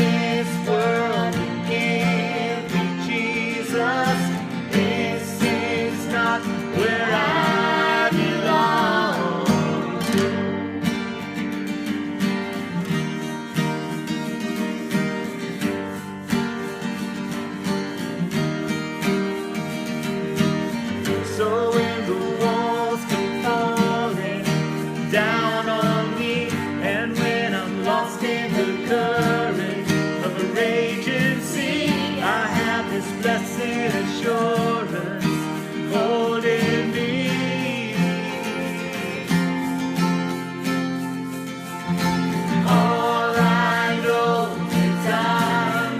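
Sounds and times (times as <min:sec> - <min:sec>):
person singing: 0:00.0 - 0:10.6, 0:21.0 - 0:45.9
strummed acoustic guitar: 0:00.0 - 0:45.9.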